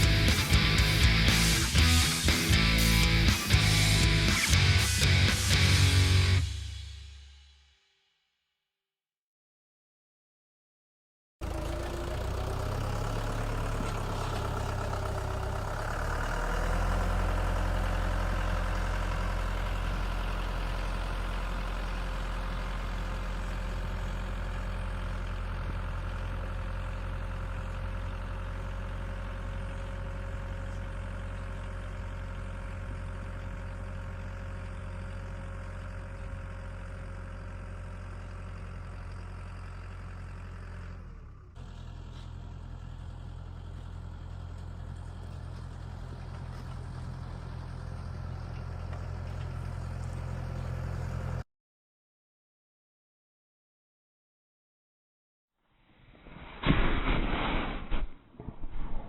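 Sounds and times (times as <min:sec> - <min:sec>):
tractor diesel engine running: 0:00.0 - 0:06.8, 0:11.4 - 0:51.4.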